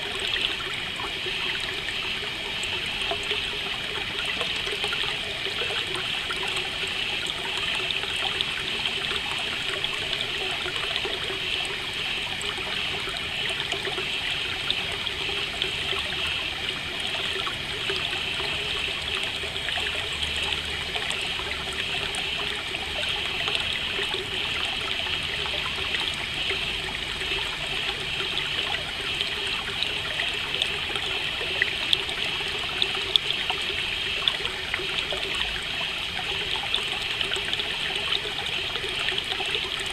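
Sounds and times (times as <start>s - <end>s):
trickling stream: 0.0s - 39.9s.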